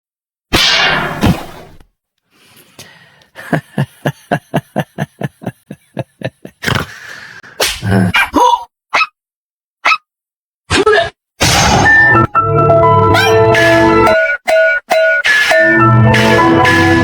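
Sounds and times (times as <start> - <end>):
dog barking: 8.9 - 9.1, 9.8 - 10.0
dog yipping: 8.9 - 9.2, 9.8 - 10.0.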